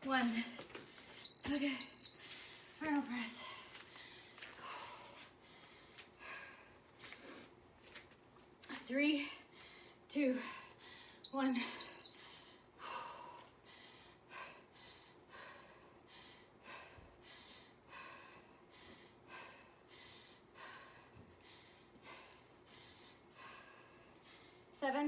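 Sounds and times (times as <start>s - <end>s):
woman breathing hard: 3.2s - 7.6s, 9.3s - 11.2s, 12.2s - 24.8s.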